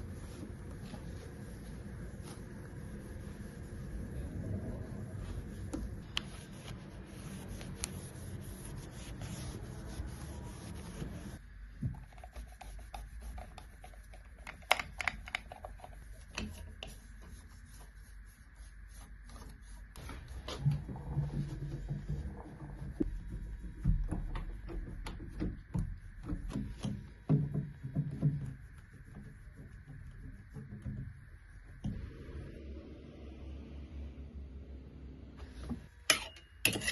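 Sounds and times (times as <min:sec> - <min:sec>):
hand scrubbing a surface: 0:00.0 - 0:11.4, 0:12.0 - 0:14.5, 0:15.4 - 0:27.2.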